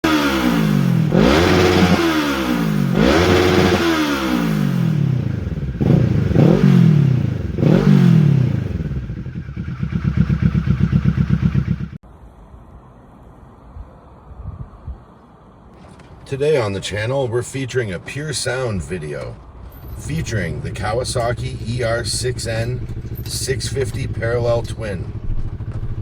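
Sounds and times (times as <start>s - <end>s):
motorcycle engine revving and idling: 0.0s - 12.0s, 19.7s - 26.0s.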